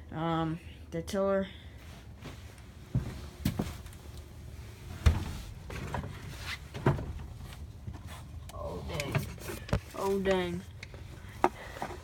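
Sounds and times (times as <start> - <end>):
low steady hum: 0.0 - 12.0
dull knocks and thumps: 5.0 - 8.0.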